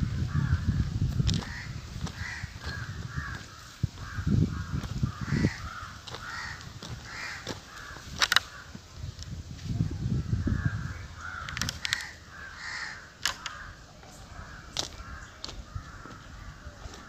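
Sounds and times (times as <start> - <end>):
birds cawing: 0.0 - 8.8, 10.0 - 17.0
sharp clicks: 8.2 - 8.5, 11.4 - 12.2, 13.2 - 13.6.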